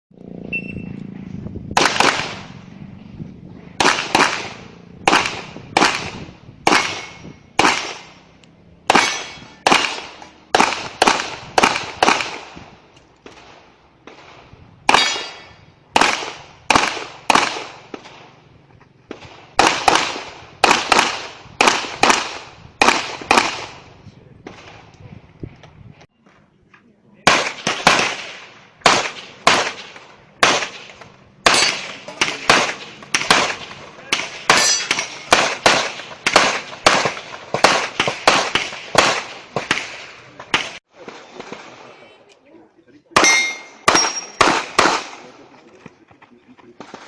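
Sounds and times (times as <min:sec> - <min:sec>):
shot timer beep: 0:00.5 - 0:01.0
handgun shots with echo: 0:03.8 - 0:08.1, 0:08.9 - 0:12.5, 0:43.2 - 0:45.3.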